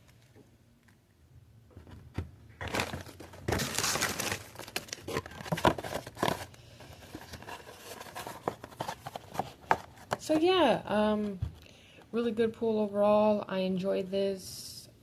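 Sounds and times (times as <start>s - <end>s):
packaging crinkling and rustling: 1.9s - 10.6s.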